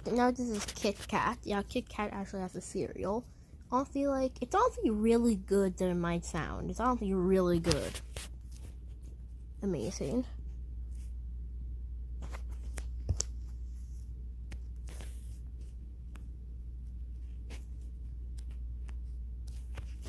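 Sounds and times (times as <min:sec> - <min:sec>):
steady low hum: 0:00.0 - 0:20.0
faint clicks and taps: 0:12.2 - 0:20.0.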